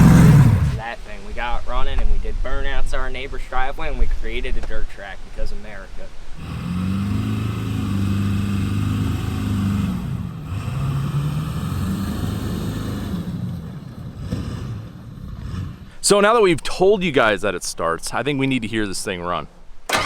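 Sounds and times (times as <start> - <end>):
vehicle engine revving: 0.0 - 0.8, 6.4 - 16.0.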